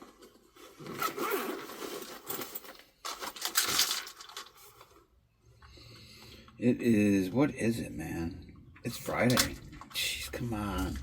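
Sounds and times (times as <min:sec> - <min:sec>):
zipper-like scraping: 0:00.8 - 0:02.3.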